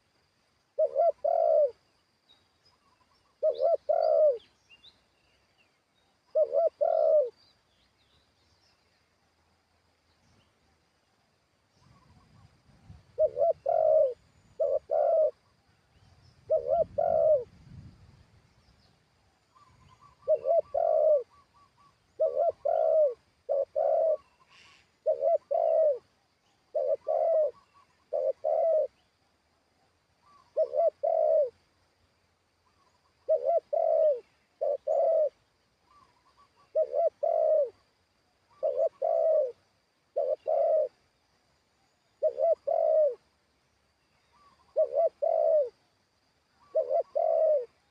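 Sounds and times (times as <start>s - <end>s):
doves cooing: 0.8s - 1.8s, 3.2s - 4.6s, 6.3s - 7.4s, 11.8s - 15.6s, 16.4s - 17.6s, 19.6s - 29.0s, 30.2s - 31.7s, 32.6s - 37.9s, 38.5s - 41.0s, 42.1s - 43.3s, 44.2s - 45.8s, 46.6s - 47.9s.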